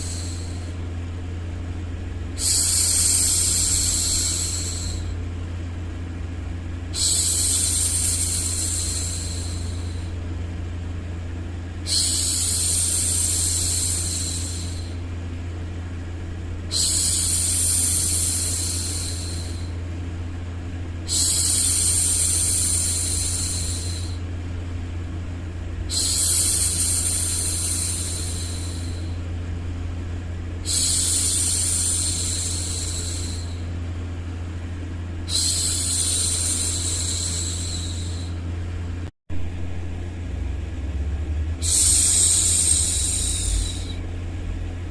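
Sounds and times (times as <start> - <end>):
low white noise hum: 0.0 - 44.9
woman shushing: 41.6 - 44.0.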